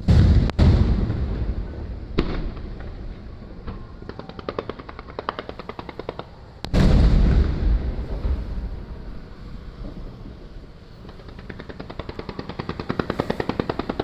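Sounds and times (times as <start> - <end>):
deep firework boom: 0.0 - 4.8, 6.7 - 12.0
firework bang: 0.0 - 6.1, 6.7 - 14.0
firework crackling pops: 10.7 - 14.0.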